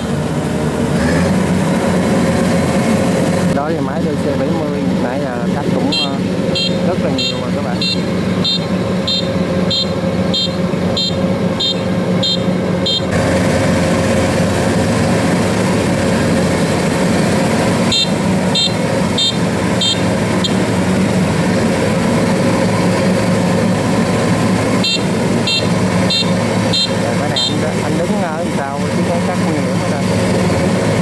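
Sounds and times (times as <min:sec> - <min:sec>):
harvester engine running under load: 0:00.0 - 0:31.0
electronic warning beep: 0:05.7 - 0:13.1, 0:17.9 - 0:20.7, 0:24.8 - 0:27.8.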